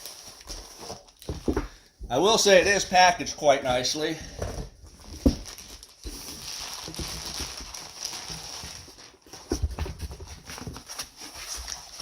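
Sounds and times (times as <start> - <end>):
packaging rustling and crinkling: 0.0 - 1.6, 4.4 - 12.0.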